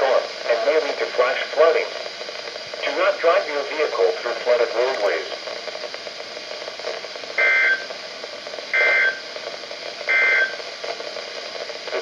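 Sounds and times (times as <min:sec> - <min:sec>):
steady background hiss: 0:00.0 - 0:12.0
short data code bursts: 0:08.7 - 0:09.2.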